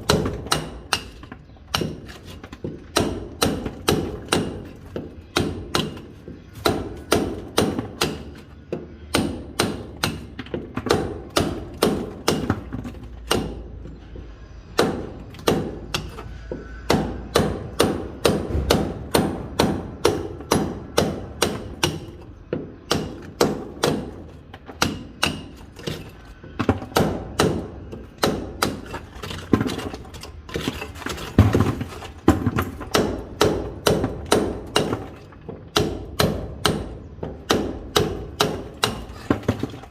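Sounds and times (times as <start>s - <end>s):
hammer striking chisel into masonry: 0.0s - 13.7s, 14.8s - 39.9s.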